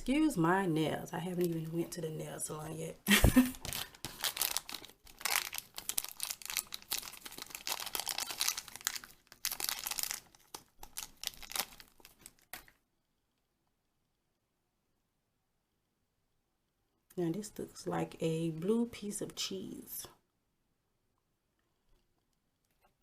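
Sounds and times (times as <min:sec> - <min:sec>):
plastic wrapper crinkling and tearing: 0:03.4 - 0:12.8.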